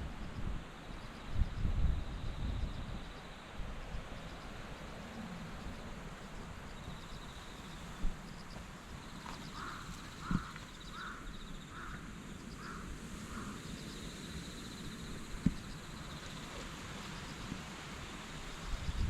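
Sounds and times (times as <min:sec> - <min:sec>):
high insect trill: 0:00.0 - 0:19.0
crow cawing: 0:09.4 - 0:13.7.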